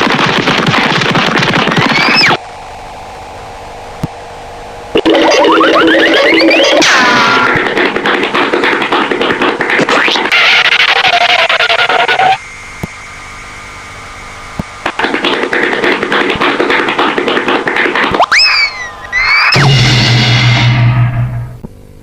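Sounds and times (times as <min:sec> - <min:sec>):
cartoon rapid clatter: 0:00.0 - 0:02.4, 0:05.0 - 0:12.4, 0:14.8 - 0:20.0
steady hum: 0:00.0 - 0:22.0.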